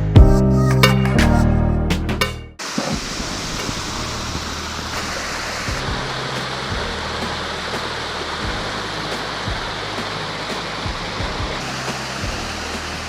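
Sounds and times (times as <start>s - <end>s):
background music: 0.0s - 2.6s, 3.7s - 13.0s
small waterfall rushing: 2.6s - 13.0s.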